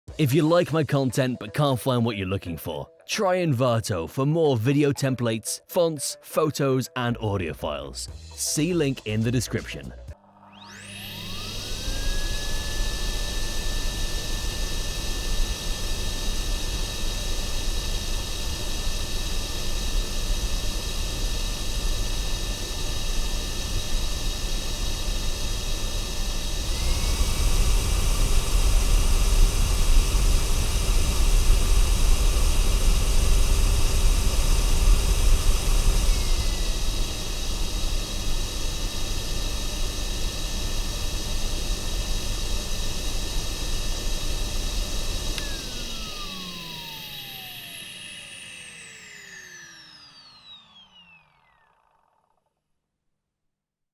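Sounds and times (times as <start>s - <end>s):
vacuum cleaner running: 10.4s - 52.3s.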